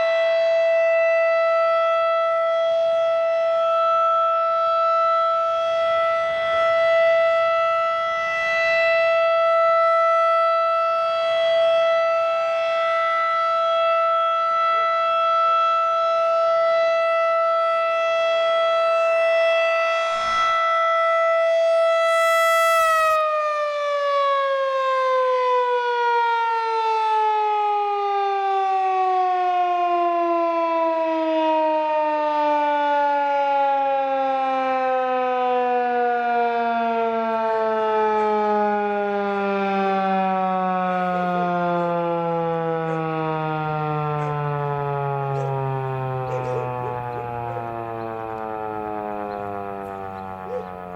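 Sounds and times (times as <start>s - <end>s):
warning siren winding down: 0.0s - 50.9s.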